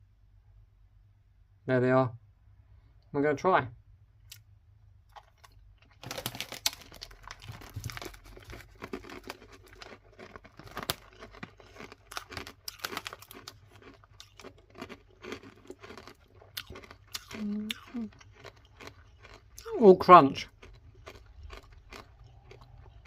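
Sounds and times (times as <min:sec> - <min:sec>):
sweets crunching as chewed: 0:05.1 - 0:23.0.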